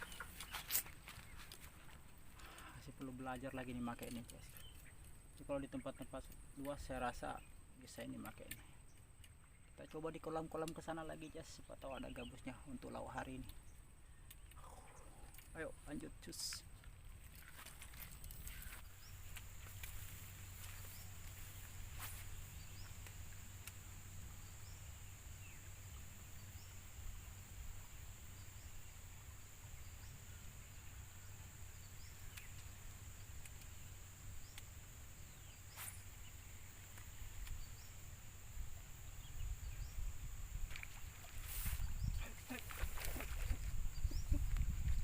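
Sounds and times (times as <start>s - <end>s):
faint chirps: 2.4s - 16.7s, 17.6s - 45.0s
high insect drone: 10.4s - 45.0s.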